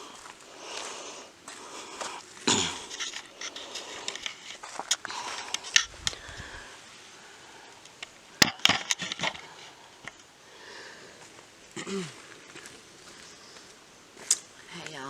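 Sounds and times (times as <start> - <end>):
footsteps crunching on trail: 0.0 - 7.1, 11.1 - 15.0
sharp cracks underfoot: 1.5 - 6.7, 7.8 - 10.3, 11.8 - 14.6.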